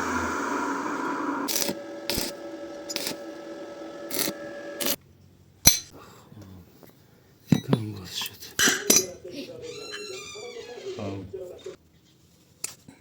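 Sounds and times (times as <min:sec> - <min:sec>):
vacuum cleaner motor humming: 0:00.0 - 0:05.0.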